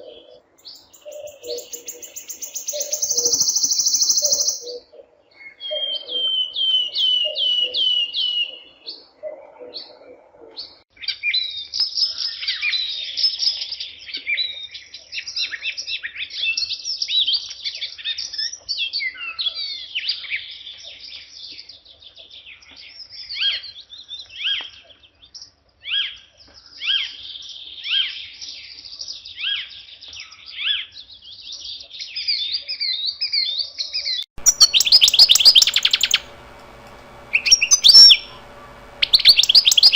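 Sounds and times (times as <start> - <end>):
birds chirping and trilling: 0.0 - 4.9, 34.4 - 39.9.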